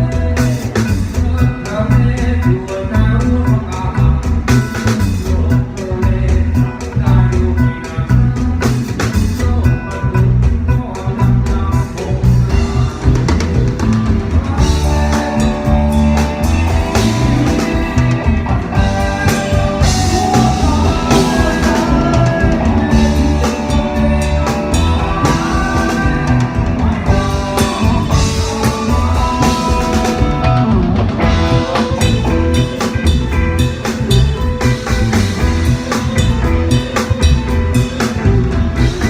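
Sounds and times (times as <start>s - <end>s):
bass: 0.0s - 39.0s
drum kit beat: 0.0s - 39.0s.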